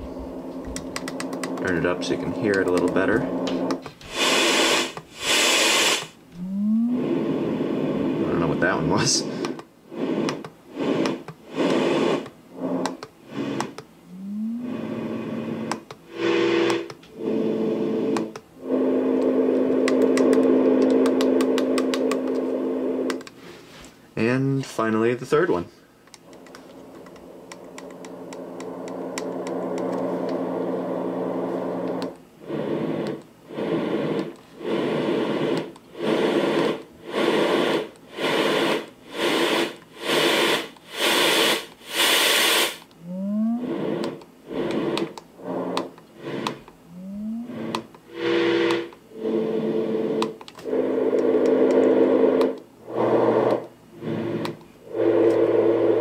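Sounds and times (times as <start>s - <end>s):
white noise machine rushing: 0.0s - 23.3s, 26.3s - 56.0s
faint hum: 0.0s - 56.0s
short rising chirps: 46.9s - 47.5s.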